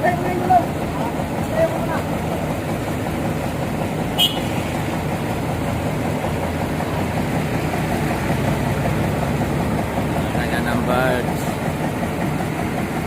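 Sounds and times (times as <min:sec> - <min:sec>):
excavator diesel engines running: 0:00.0 - 0:13.0.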